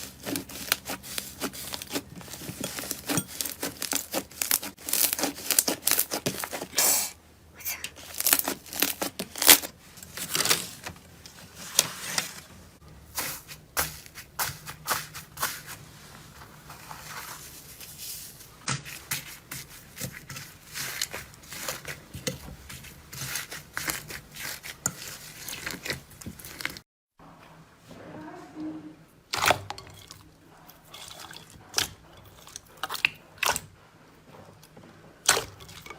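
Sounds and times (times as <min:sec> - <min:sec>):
slime crackling and squelching: 0:00.0 - 0:07.0, 0:07.6 - 0:10.9, 0:18.7 - 0:26.8.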